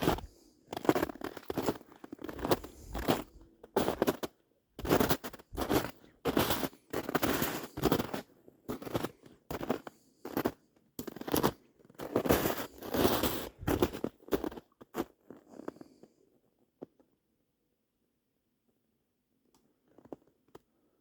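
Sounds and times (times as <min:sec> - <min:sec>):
footsteps crunching through twigs: 0:12.2 - 0:14.6.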